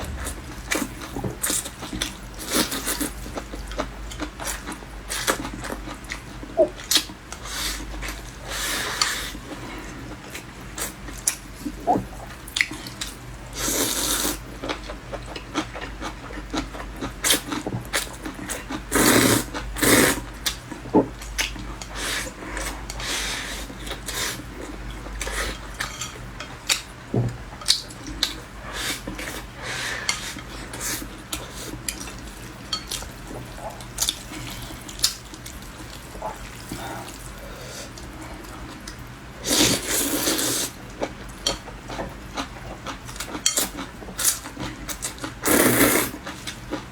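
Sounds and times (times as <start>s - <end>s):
wet chewing and slurping: 27.7s - 41.1s, 42.0s - 46.8s.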